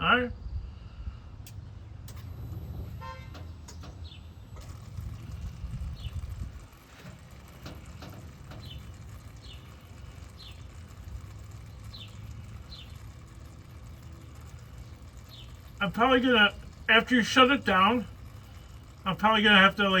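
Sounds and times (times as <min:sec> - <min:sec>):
car engine idling: 0:01.2 - 0:20.0
bird chirping: 0:03.3 - 0:06.8, 0:08.4 - 0:16.0.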